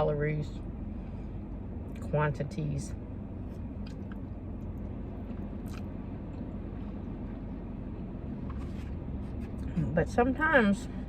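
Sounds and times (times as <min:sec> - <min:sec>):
steady low rumble: 0:00.0 - 0:11.0
person chewing food: 0:03.5 - 0:07.4.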